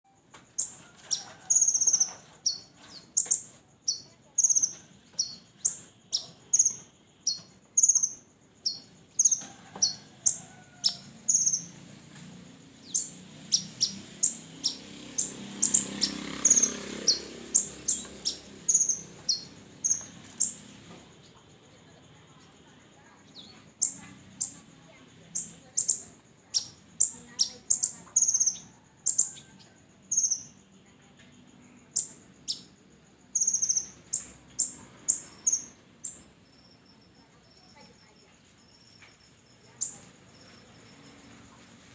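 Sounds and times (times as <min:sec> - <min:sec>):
bird high chirps: 0:00.0 - 0:11.8, 0:12.8 - 0:21.4, 0:23.0 - 0:30.6, 0:31.8 - 0:41.3
bird buzzy trills: 0:00.6 - 0:21.2.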